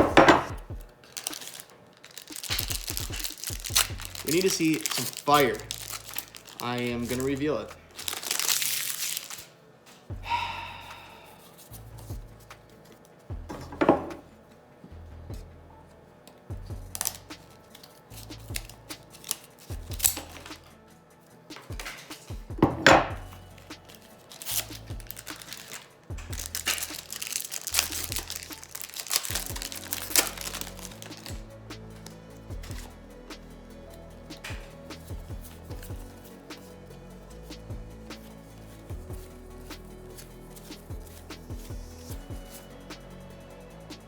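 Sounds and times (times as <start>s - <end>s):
plastic wrappers crinkling and tearing: 0.0s - 10.1s, 16.9s - 20.7s, 23.1s - 33.1s, 33.9s - 43.1s
quiet music with pulsing bass: 0.0s - 44.0s.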